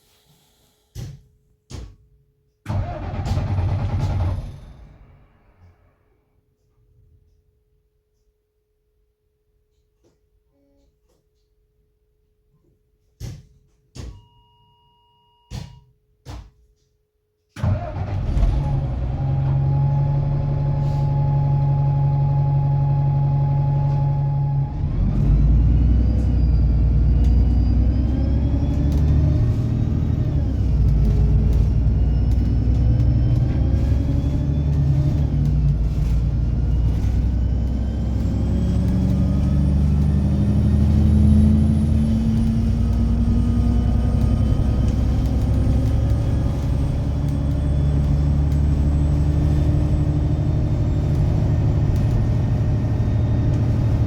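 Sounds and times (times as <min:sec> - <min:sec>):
bus diesel engine running: 0:17.6 - 0:54.0
drivetrain whine: 0:17.6 - 0:54.0.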